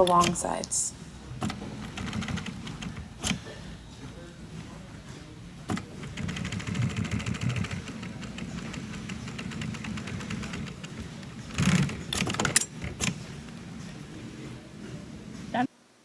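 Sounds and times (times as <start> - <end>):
sewing machine running: 1.4 - 3.4, 5.7 - 13.3
sharp clicks and knocks: 5.7 - 13.2.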